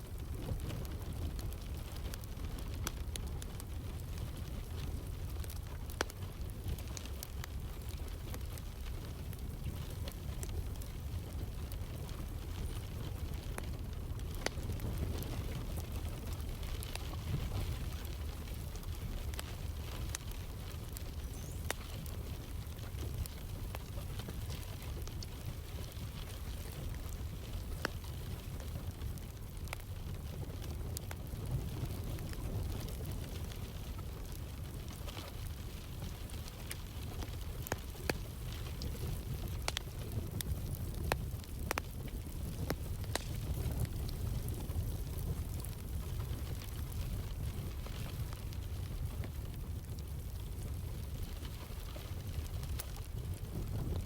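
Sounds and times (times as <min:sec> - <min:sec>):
wood fire crackling and popping: 0:00.0 - 0:54.0.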